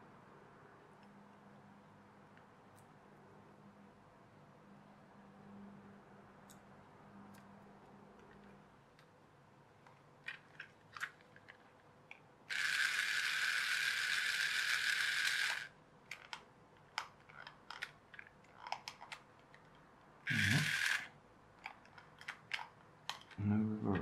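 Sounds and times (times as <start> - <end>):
toy motor whirring: 12.5 - 15.7, 20.3 - 21.1.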